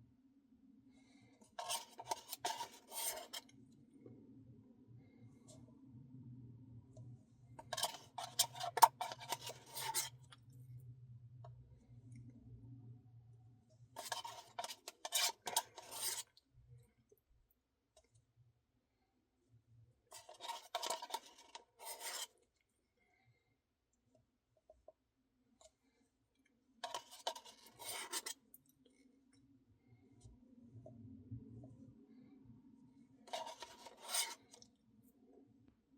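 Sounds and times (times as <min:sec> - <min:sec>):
spoon scraping a cup: 0:01.6 - 0:03.4, 0:07.6 - 0:10.2, 0:14.0 - 0:16.3, 0:20.1 - 0:22.3, 0:26.8 - 0:28.4, 0:33.3 - 0:34.6
low steady hum: 0:28.6 - 0:33.8.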